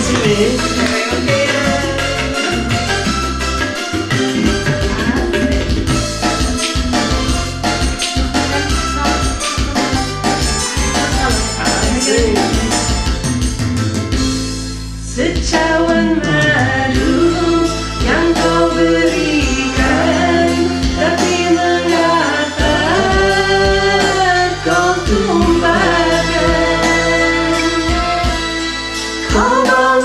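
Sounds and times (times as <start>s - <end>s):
person singing karaoke: 0.0s - 13.5s, 15.0s - 30.0s
recorded backing track: 0.0s - 30.0s.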